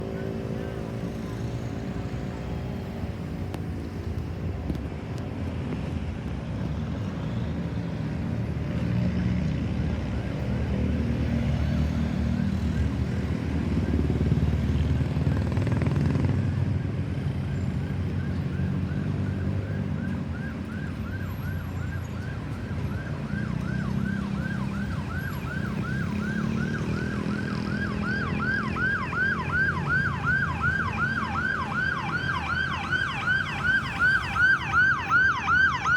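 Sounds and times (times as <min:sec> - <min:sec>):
road traffic: 0:00.0 - 0:35.9
ambulance siren yelping: 0:16.6 - 0:35.9.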